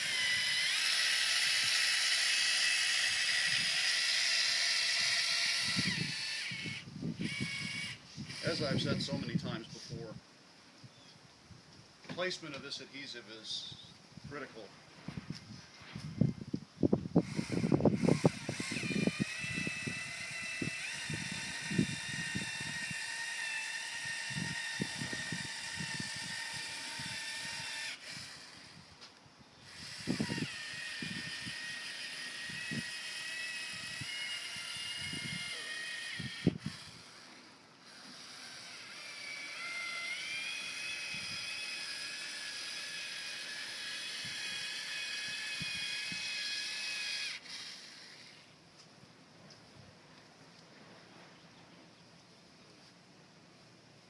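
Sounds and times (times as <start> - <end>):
caulking gun motor whining: 0.0 - 9.6, 17.2 - 48.6.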